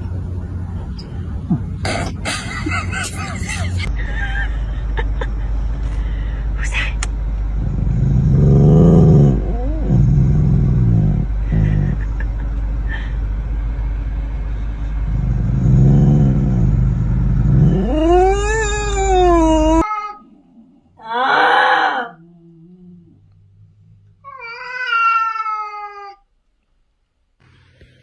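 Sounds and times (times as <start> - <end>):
cat growling: 7.5 - 12.5, 14.7 - 26.4
cat yowling: 8.4 - 10.2, 17.5 - 23.2, 24.2 - 26.3.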